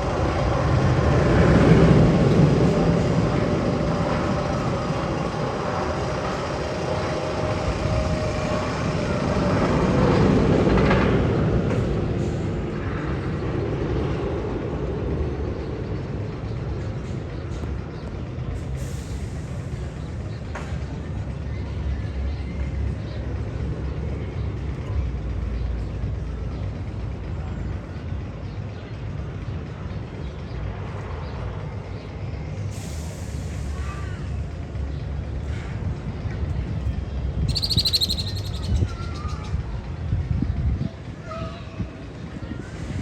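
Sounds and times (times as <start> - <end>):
roller coaster rumble: 0.0 - 43.0
short air hisses: 32.7 - 34.0.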